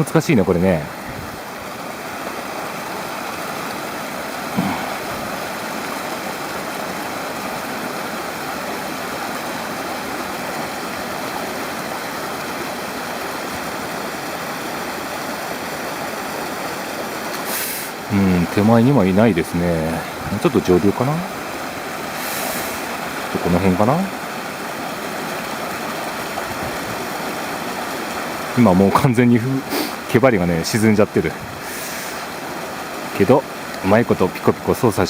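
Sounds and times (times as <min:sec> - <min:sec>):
stream rushing over rocks: 0:00.0 - 0:35.0.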